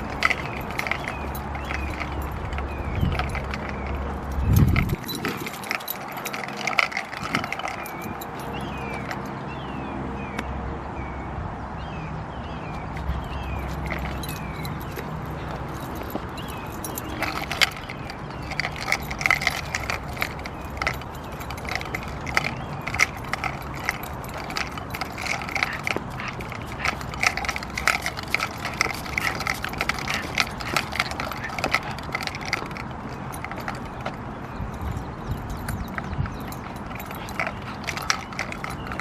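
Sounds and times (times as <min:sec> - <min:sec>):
metallic jingling and clicking: 0:00.0 - 0:09.8, 0:12.6 - 0:39.0.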